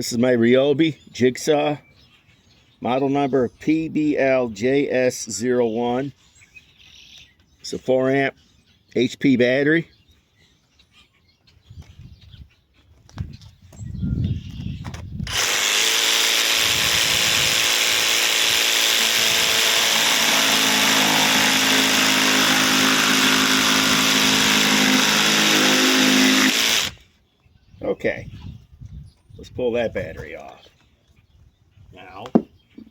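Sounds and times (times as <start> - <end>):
jigsaw sawing through wood: 15.2 - 27.0.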